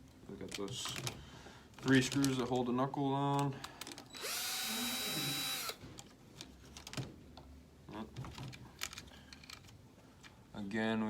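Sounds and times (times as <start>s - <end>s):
electric screwdriver whining: 4.1s - 5.8s.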